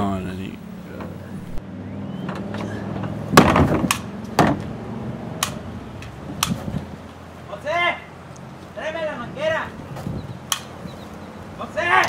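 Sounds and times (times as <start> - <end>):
low engine hum: 0.0 - 7.5.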